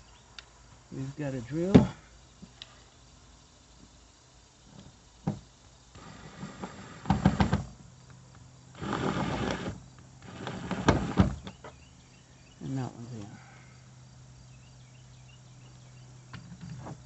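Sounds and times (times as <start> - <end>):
cordless drill driving a screw: 8.8 - 11.2.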